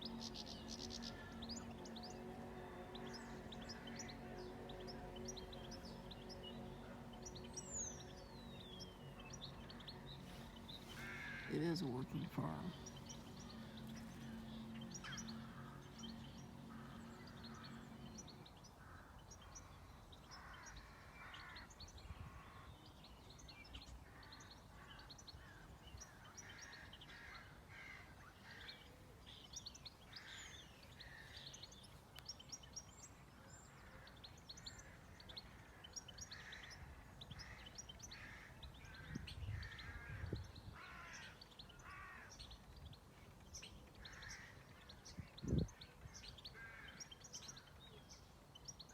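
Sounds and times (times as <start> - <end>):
low steady hum: 0.0 - 21.0
birds chirping and twittering: 0.0 - 48.9.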